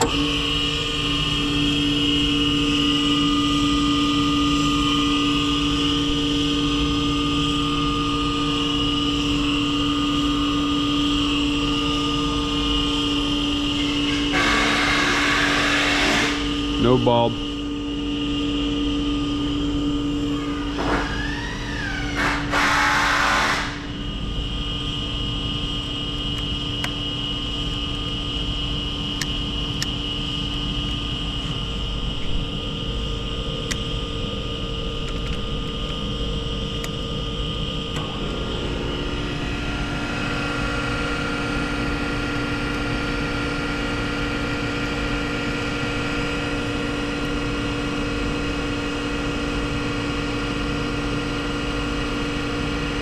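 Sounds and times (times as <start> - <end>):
high steady whine: 0.0 - 53.0
surface grinder humming: 13.6 - 16.5, 37.8 - 43.5.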